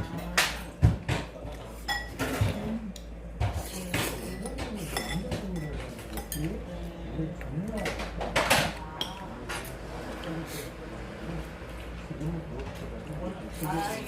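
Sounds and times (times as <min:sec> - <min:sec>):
dishes and cutlery clinking: 0:00.0 - 0:06.8, 0:07.6 - 0:09.8.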